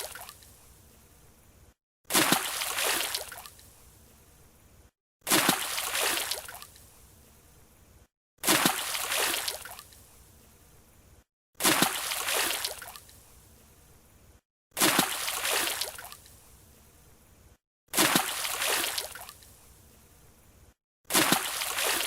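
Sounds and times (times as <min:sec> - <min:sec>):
water dripping and sloshing: 0:00.0 - 0:00.5, 0:02.1 - 0:03.7, 0:05.3 - 0:06.9, 0:08.4 - 0:10.1, 0:11.6 - 0:13.2, 0:14.8 - 0:16.4, 0:18.0 - 0:19.5, 0:21.1 - 0:22.0
diver splashing into pool: 0:02.1 - 0:03.4, 0:05.3 - 0:06.6, 0:08.4 - 0:09.8, 0:11.6 - 0:12.9, 0:14.8 - 0:16.0, 0:17.9 - 0:19.2, 0:21.1 - 0:22.0.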